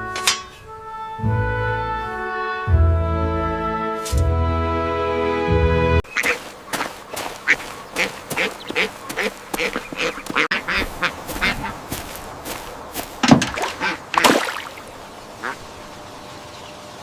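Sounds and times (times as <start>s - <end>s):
ducks quacking: 6.0s - 15.8s.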